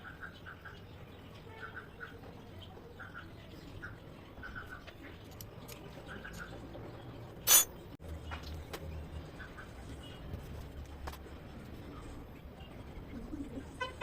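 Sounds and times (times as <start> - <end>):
small birds chirping: 0.0 - 10.8
high ringing clink: 7.5 - 7.7
tools clicking: 7.5 - 7.7.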